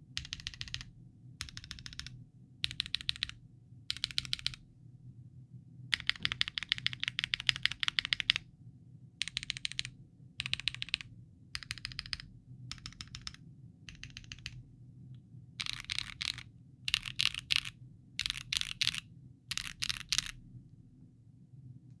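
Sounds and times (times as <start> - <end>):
mechanical keyboard typing: 0.2 - 4.6, 5.9 - 8.4, 9.2 - 14.6, 15.6 - 20.4.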